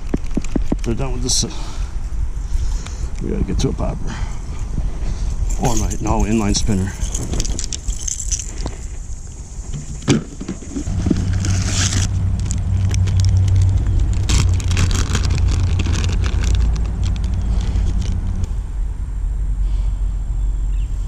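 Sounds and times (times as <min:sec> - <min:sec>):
low engine rumble: 0:00.0 - 0:21.0
fishing tackle clicks and rattles: 0:05.4 - 0:08.9, 0:09.7 - 0:18.5.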